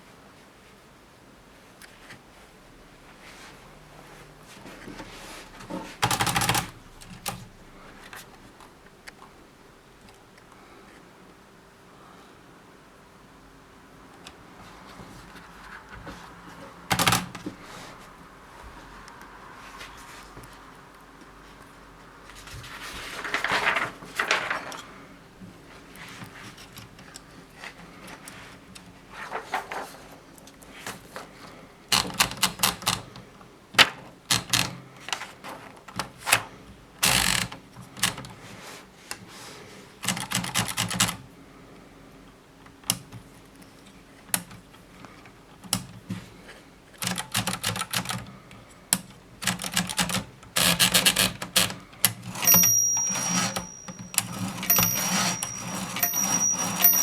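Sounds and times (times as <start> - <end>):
typewriter key strikes: 49.4 - 57.0
typewriter rasping stroke: 49.4 - 57.0
thin steady high tone: 52.4 - 57.0.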